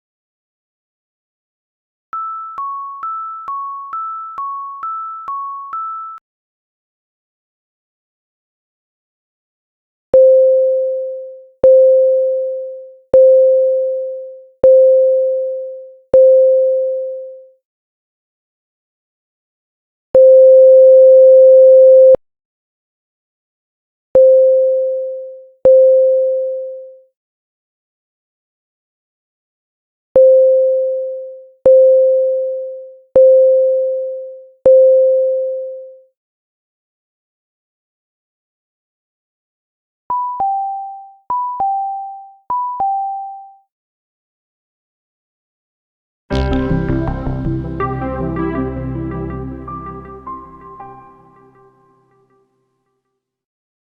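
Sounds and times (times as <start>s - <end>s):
electronic school bell tone: 46.3s - 52.2s.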